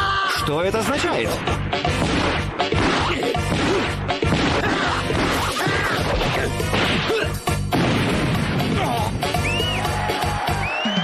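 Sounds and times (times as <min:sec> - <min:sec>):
dramatic background music: 0:01.2 - 0:10.7
punch impacts: 0:01.9 - 0:09.1.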